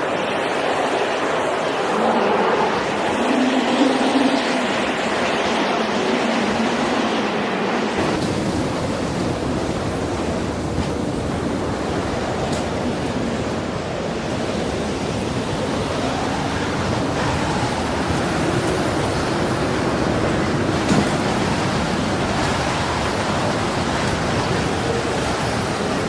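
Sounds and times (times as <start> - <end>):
rushing wind: 0.0 - 26.0.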